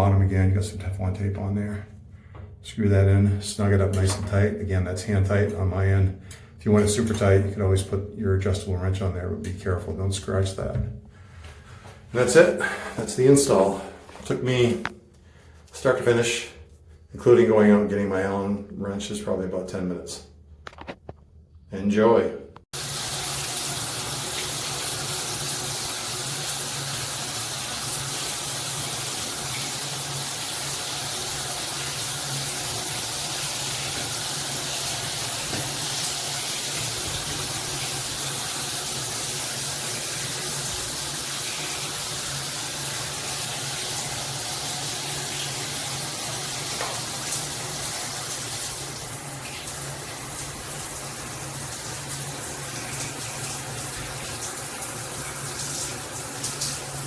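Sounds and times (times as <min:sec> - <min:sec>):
shower water spraying: 0:22.8 - 0:57.0.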